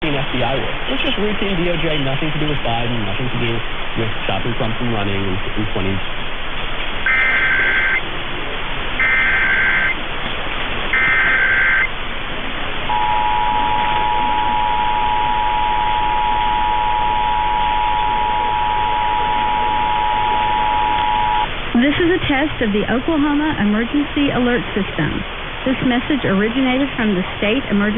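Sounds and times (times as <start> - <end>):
steady hiss: 0.0 - 27.9
buzzing data bursts: 7.0 - 8.1, 9.0 - 10.0, 10.9 - 12.0, 12.9 - 21.9
two-tone attention signal: 7.1 - 8.0, 9.0 - 10.0, 10.9 - 11.9, 12.9 - 21.5.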